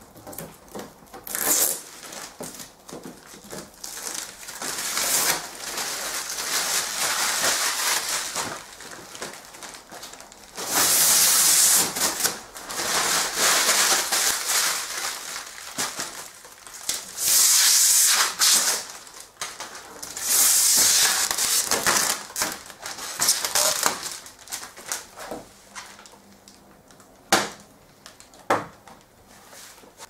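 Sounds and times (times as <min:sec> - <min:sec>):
plastic wrap crackling: 0:00.0 - 0:28.4
tape tearing: 0:01.1 - 0:25.1.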